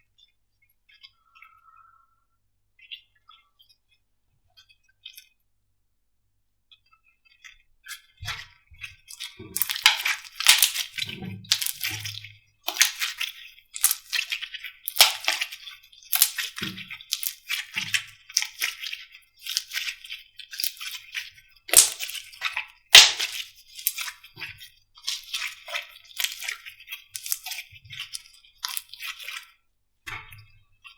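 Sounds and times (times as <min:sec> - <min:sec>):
slime crackling and popping: 0:09.5 - 0:20.0, 0:20.6 - 0:21.0, 0:21.7 - 0:24.1, 0:25.1 - 0:29.3.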